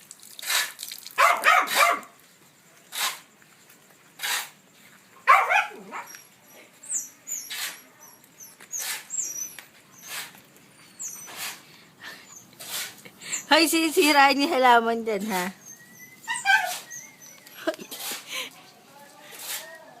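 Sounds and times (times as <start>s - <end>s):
puppies barking: 1.2s - 2.2s, 5.2s - 6.3s, 15.6s - 17.8s.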